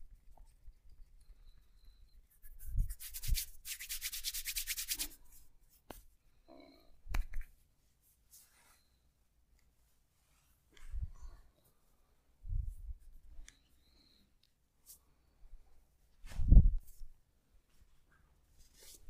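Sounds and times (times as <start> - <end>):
hands rubbing briskly: 2.4 - 6.0.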